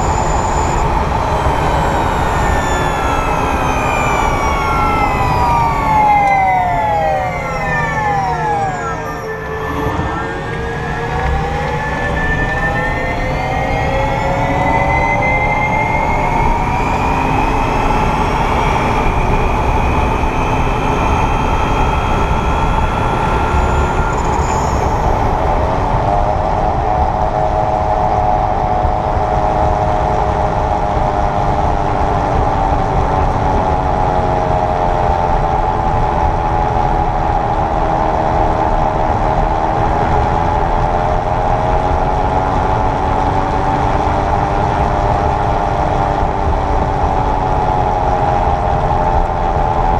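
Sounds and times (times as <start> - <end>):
electric drivetrain whirring: 0.0 - 49.9
road noise: 0.0 - 49.9.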